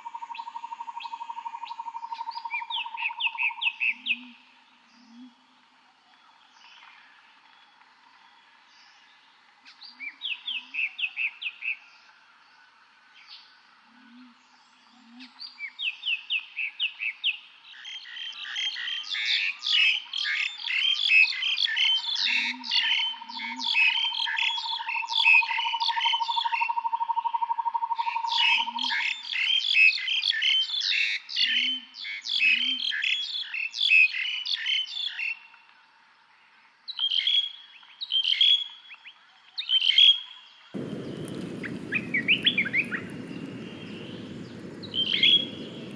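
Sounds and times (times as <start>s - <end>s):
bird trill: 40.8s - 45.9s
birds chirping: 40.8s - 45.9s.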